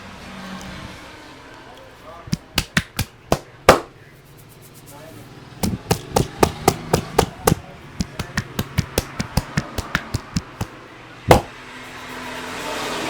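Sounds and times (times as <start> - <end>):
hands striking in percussive massage: 2.3 - 4.0, 5.6 - 11.6.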